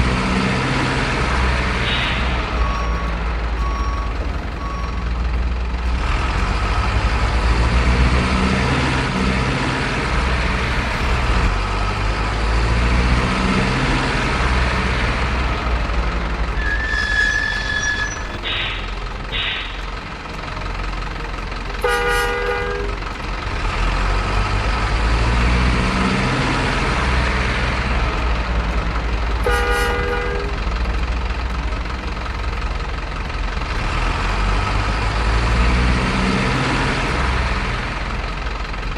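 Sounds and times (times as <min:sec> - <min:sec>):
truck engines rumbling: 0:00.0 - 0:38.9
horn blasts: 0:01.5 - 0:05.2, 0:16.5 - 0:20.5, 0:21.8 - 0:23.1, 0:29.4 - 0:30.9
short high beeps: 0:01.9 - 0:05.1.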